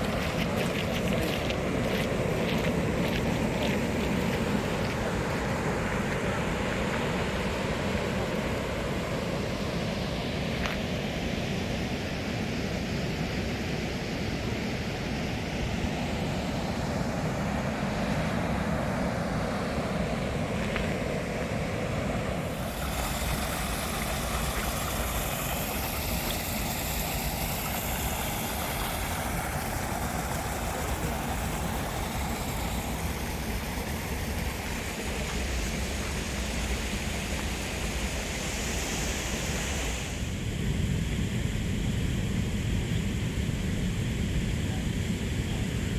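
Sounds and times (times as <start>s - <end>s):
waterfall roaring: 0.0s - 10.2s, 22.4s - 40.1s.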